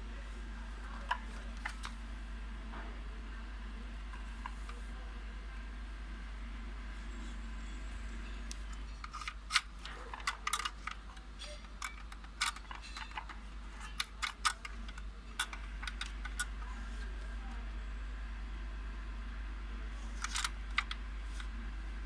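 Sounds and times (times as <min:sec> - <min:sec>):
plastic parts clicking and knocking: 0:08.5 - 0:16.5.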